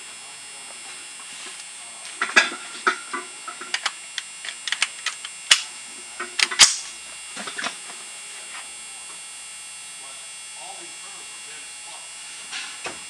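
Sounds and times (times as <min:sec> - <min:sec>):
steady electrical hum: 0:00.0 - 0:12.5
sharp clicks and knocks: 0:03.6 - 0:06.9.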